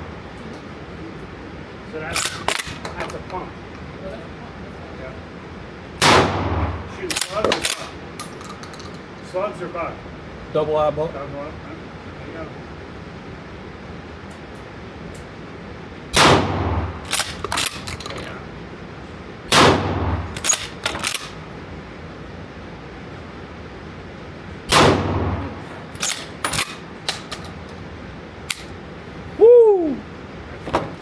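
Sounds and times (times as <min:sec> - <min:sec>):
shotgun shots: 0:06.0 - 0:07.8, 0:16.1 - 0:17.8, 0:19.5 - 0:21.3, 0:24.7 - 0:26.7
shotgun pump racking clacks: 0:07.1 - 0:09.0, 0:17.1 - 0:18.4, 0:20.3 - 0:21.4.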